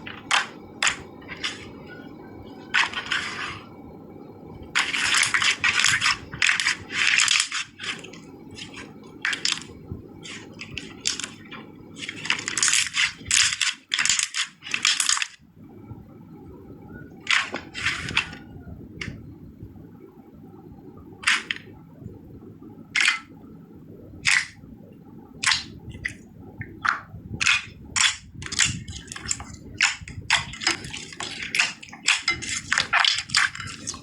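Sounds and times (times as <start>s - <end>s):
slime clicking and popping: 24.2s - 24.6s.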